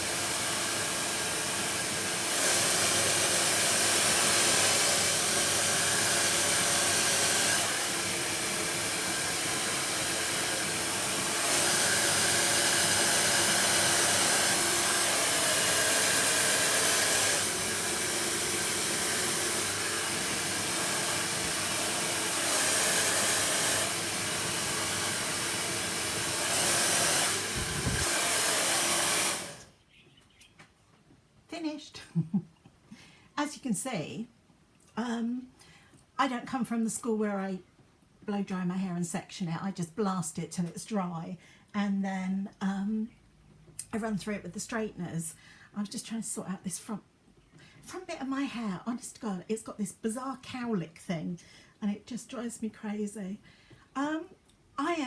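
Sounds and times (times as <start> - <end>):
hair dryer blowing: 0.0 - 29.7.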